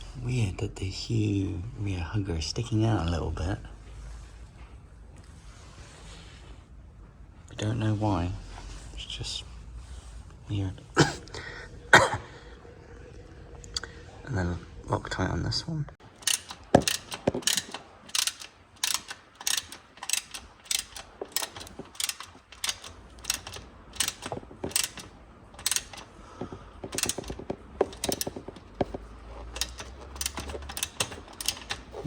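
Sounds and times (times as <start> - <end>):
ratchet wrench clicking: 16.2 - 26.2, 26.8 - 32.0.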